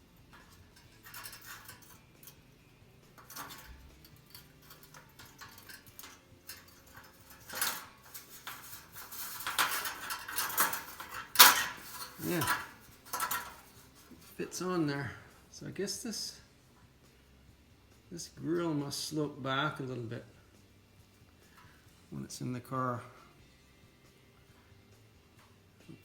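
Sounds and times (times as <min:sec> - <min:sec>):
metal parts clinking and scraping: 0:00.2 - 0:14.4.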